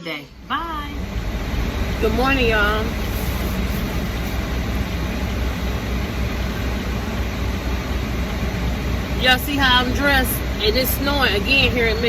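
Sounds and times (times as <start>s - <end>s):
car cabin road rumble: 0.3s - 12.0s
hiss: 0.9s - 9.3s.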